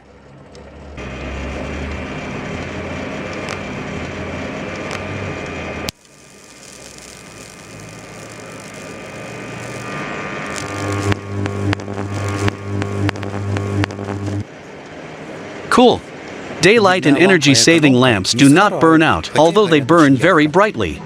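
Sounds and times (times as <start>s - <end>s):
transformer buzzing with mains hum: 0.0s - 20.2s
sharp clicks: 10.5s - 14.4s.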